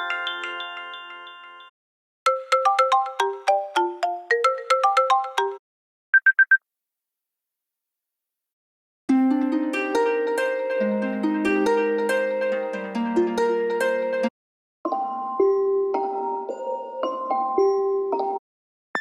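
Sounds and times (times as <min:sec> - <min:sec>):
phone ringtone melody: 0:00.0 - 0:01.7.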